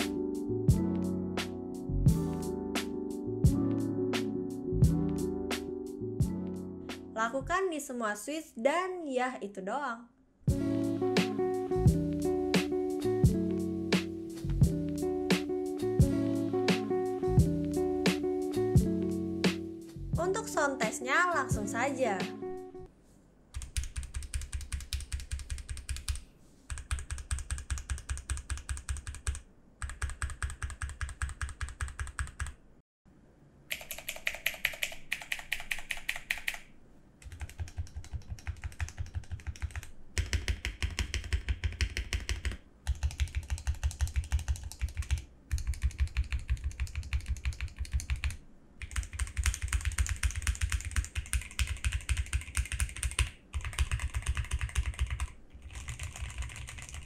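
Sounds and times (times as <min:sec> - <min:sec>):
mechanical keyboard typing: 0:23.6 - 0:32.6, 0:33.7 - 0:57.0.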